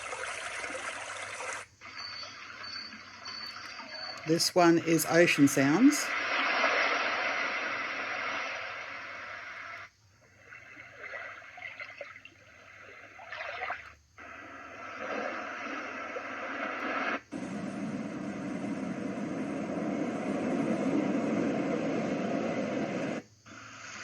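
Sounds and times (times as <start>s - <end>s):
ocean wave sounds from speaker: 2.6s - 11.6s, 14.2s - 24.0s.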